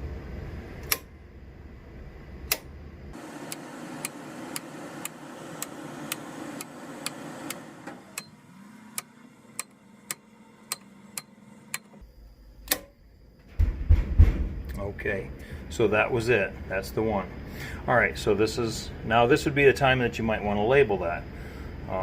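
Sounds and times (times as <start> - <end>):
low hum: 0.0 - 19.6
circuit breakers clicking: 0.8 - 1.2, 2.4 - 12.0, 12.6 - 13.0.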